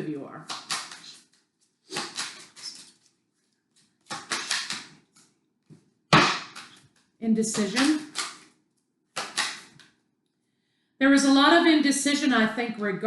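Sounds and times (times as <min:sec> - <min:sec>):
cards being shuffled: 0:00.4 - 0:10.0.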